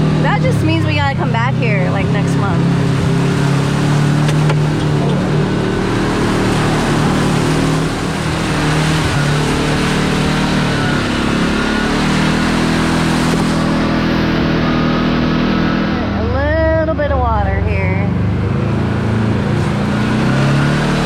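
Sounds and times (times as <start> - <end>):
tyre and trail noise: 0.0 - 16.7
engine running: 0.0 - 21.0.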